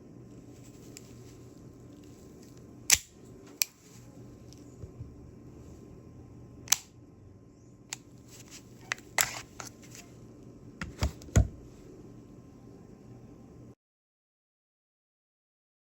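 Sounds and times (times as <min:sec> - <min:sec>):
dull knock: 0:10.8 - 0:11.6.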